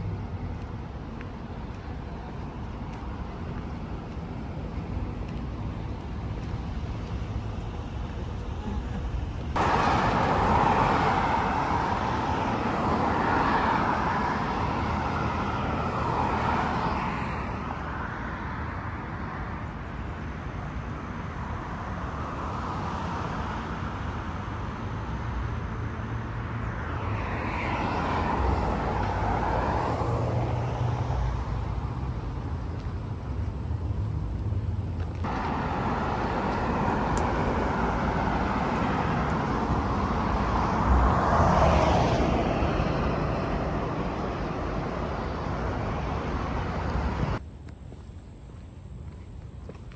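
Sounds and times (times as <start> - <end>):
hum of city traffic: 0.0 - 49.9
vehicles passing: 0.0 - 49.9.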